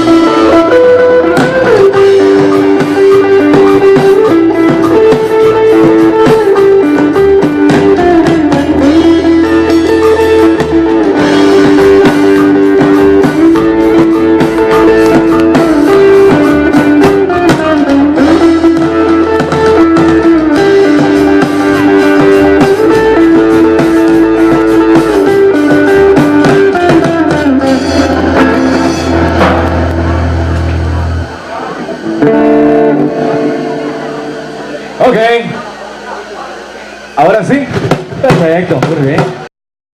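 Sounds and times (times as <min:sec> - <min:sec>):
sliding guitar melody: 0:00.0 - 0:38.3
guitar accompaniment: 0:00.0 - 0:39.5.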